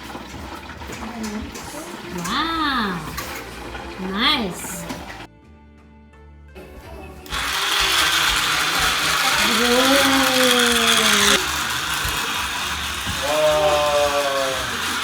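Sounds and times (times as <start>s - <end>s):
toy train gear rattle: 7.3s - 15.0s.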